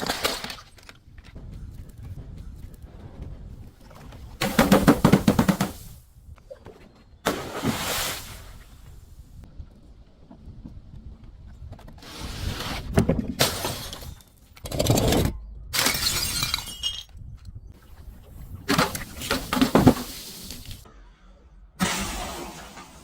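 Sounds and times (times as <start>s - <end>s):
glass bottles shattering: 13.4s - 14.4s, 15.8s - 17.2s.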